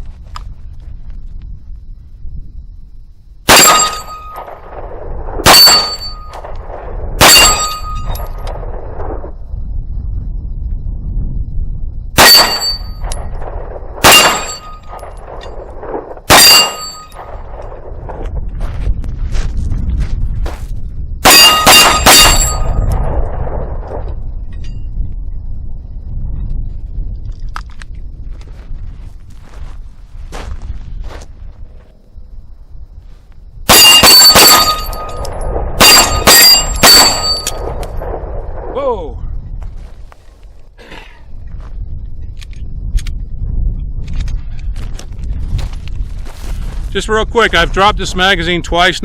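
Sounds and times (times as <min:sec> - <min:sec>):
ringing after gunshots: 0:03.4 - 0:09.3, 0:12.2 - 0:18.2, 0:21.2 - 0:24.9, 0:33.7 - 0:38.7
pistol shots: 0:03.5 - 0:09.1, 0:12.2 - 0:17.8, 0:21.2 - 0:24.0, 0:33.7 - 0:38.2.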